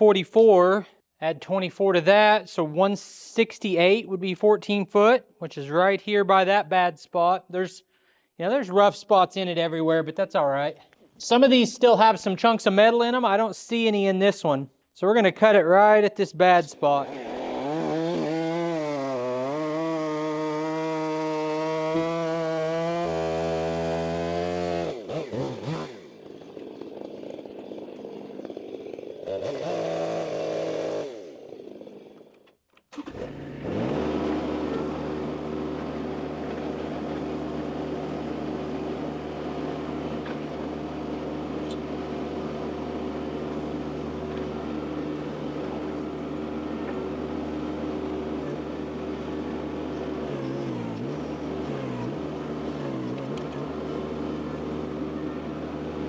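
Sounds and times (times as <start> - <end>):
chainsaw engine revving: 16.7 - 56.0
engine running steadily: 16.8 - 56.0.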